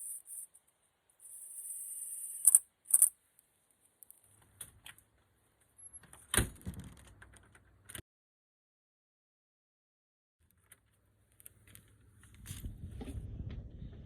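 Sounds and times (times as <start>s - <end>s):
door shutting with a thud: 6.3s - 7.0s.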